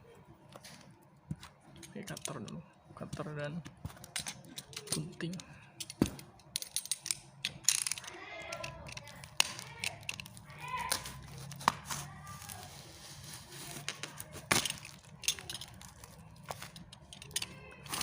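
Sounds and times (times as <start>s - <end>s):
wrapping tearing and crinkling: 8.1s - 18.0s
knife cutting packing tape: 10.8s - 16.8s.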